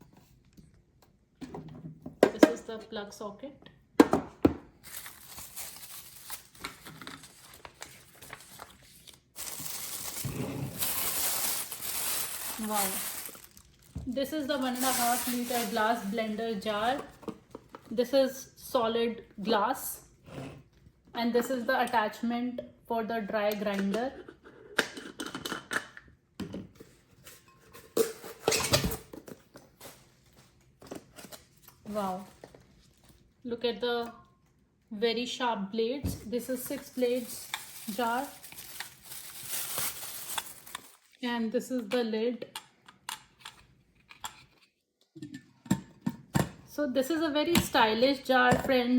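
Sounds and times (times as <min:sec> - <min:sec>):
packaging crinkling and tearing: 0:04.8 - 0:16.6, 0:36.6 - 0:41.2
packaging rustling: 0:04.8 - 0:17.2, 0:36.5 - 0:41.2.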